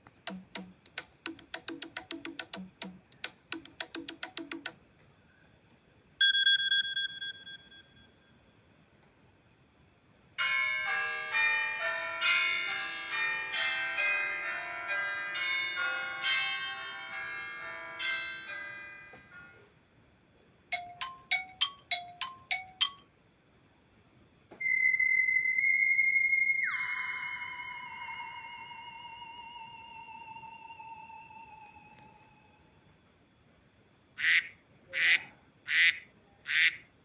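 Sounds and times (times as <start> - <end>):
chiming bell melody: 10.4 - 19.2, 20.8 - 23.0.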